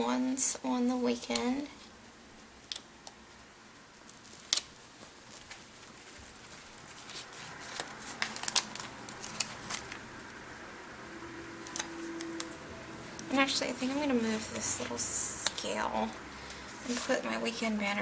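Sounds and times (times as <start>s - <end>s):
sticker sheets crinkling: 3.9s - 10.3s, 11.6s - 18.0s.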